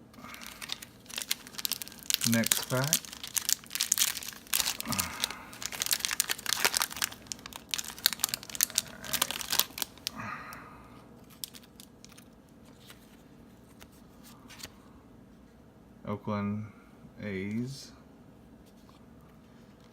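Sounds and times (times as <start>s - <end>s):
wrapper tearing and crinkling: 0.2s - 10.2s, 11.2s - 13.0s.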